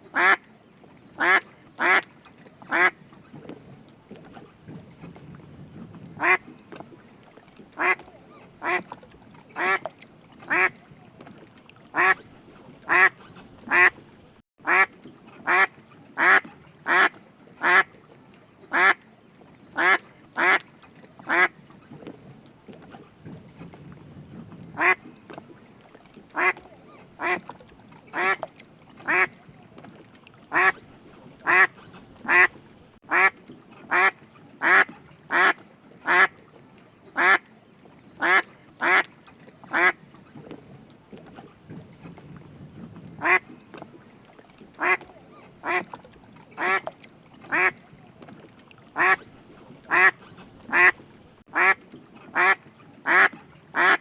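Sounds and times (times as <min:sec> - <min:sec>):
duck quacking: 0:00.2 - 0:00.4, 0:01.2 - 0:02.0, 0:02.7 - 0:02.9, 0:06.2 - 0:06.4, 0:07.8 - 0:08.0, 0:08.6 - 0:08.8, 0:09.6 - 0:09.8, 0:12.0 - 0:12.2, 0:12.9 - 0:14.0, 0:14.6 - 0:17.9, 0:18.7 - 0:19.0, 0:19.8 - 0:20.6, 0:24.8 - 0:25.0, 0:26.4 - 0:26.6, 0:27.2 - 0:27.4, 0:30.5 - 0:30.8, 0:31.4 - 0:33.3, 0:33.9 - 0:36.3, 0:38.2 - 0:39.1, 0:43.2 - 0:43.4, 0:44.8 - 0:45.0, 0:45.6 - 0:45.9, 0:46.6 - 0:46.8, 0:47.5 - 0:47.8, 0:49.0 - 0:49.2, 0:49.9 - 0:54.0.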